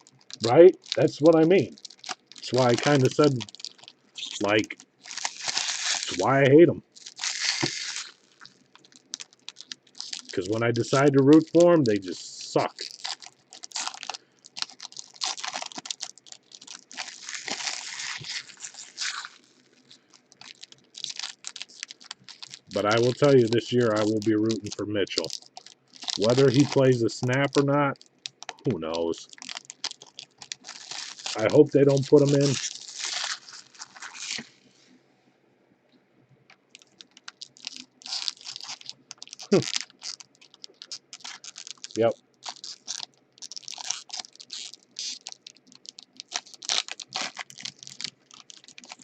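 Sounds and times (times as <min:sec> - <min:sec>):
foil wrappers crinkling: 0:00.0 - 0:34.8, 0:36.5 - 0:49.0
cards clicking and rustling: 0:02.4 - 0:03.4, 0:26.2 - 0:27.6.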